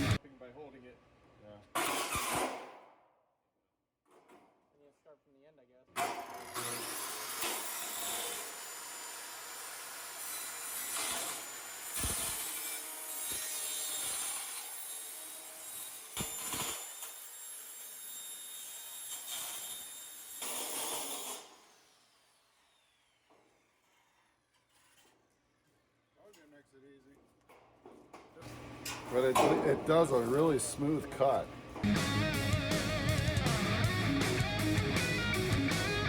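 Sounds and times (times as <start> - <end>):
power saw cutting panel: 6.0 - 25.0
saw motor winding down: 6.2 - 12.5.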